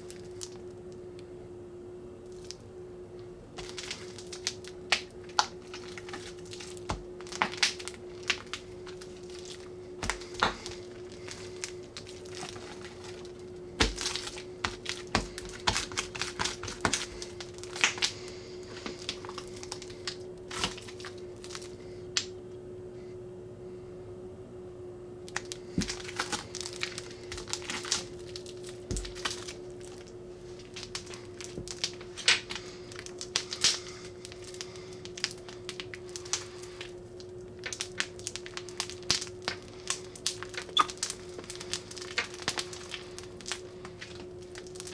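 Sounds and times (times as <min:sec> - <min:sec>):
faint hum: 0:00.0 - 0:44.9
slime squeezed with sticky pops: 0:37.7 - 0:44.9.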